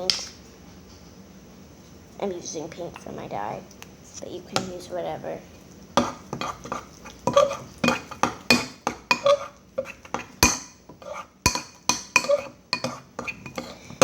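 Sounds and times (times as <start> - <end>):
spoon stirring sticky dough: 5.6 - 14.0
spoon clinking on bowl: 7.3 - 9.5, 11.5 - 13.8.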